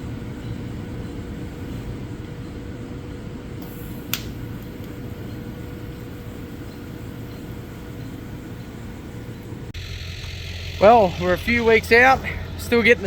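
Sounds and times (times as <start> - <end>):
faint constant tone: 0.0 - 9.8
low mechanical hum: 0.0 - 13.0
sharp click: 3.6 - 5.0.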